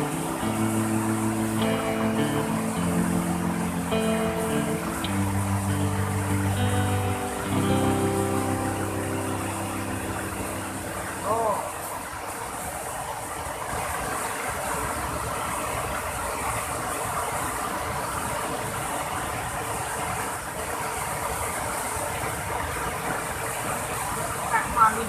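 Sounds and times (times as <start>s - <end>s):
river water rushing: 0.0s - 25.0s.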